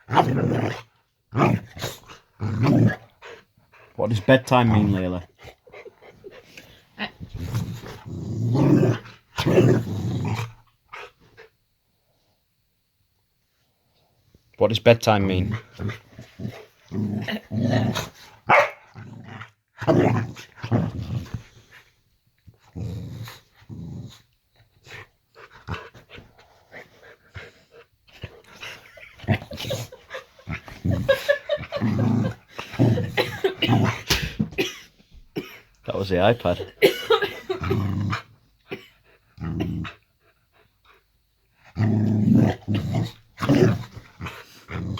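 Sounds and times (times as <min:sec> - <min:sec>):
dog growling: 0:00.0 - 0:03.4, 0:07.0 - 0:11.1, 0:15.3 - 0:21.6, 0:22.6 - 0:34.6, 0:36.5 - 0:40.6, 0:41.6 - 0:44.9.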